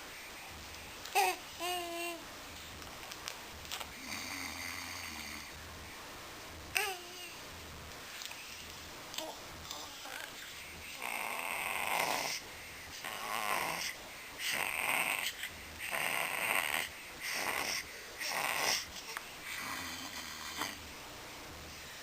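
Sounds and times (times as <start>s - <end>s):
baby making raspy snore-like noises: 4.0s - 5.6s, 10.9s - 12.4s, 13.0s - 18.9s, 19.5s - 20.8s.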